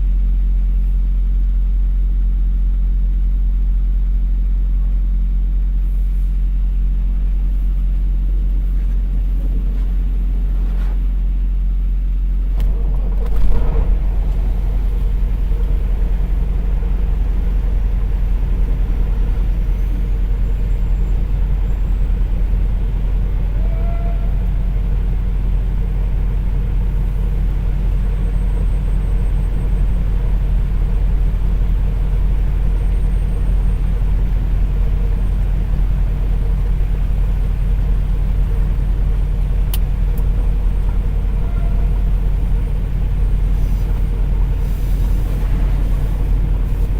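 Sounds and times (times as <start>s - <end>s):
diesel truck engine idling: 0.0s - 46.9s
sudden loud burst: 12.6s - 17.4s.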